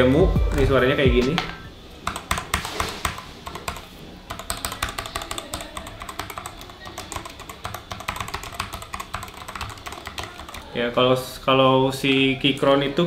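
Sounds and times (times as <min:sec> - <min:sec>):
mechanical keyboard typing: 0:02.0 - 0:10.8.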